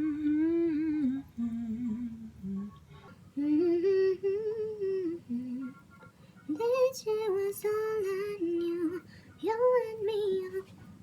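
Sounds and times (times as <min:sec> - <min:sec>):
woman humming a tune: 0:00.0 - 0:05.8.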